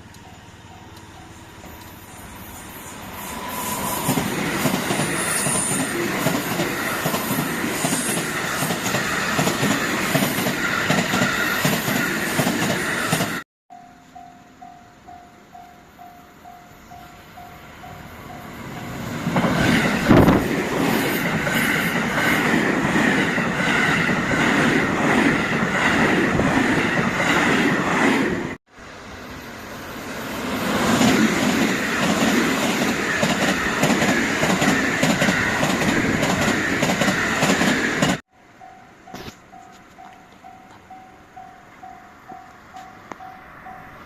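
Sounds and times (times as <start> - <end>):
crossing bell dinging: 0.0 - 2.5, 13.7 - 19.1, 38.3 - 44.0
train wheels rushing and clacking: 1.0 - 13.4, 18.6 - 28.6, 30.2 - 38.2
high wheel squeal: 1.2 - 13.4.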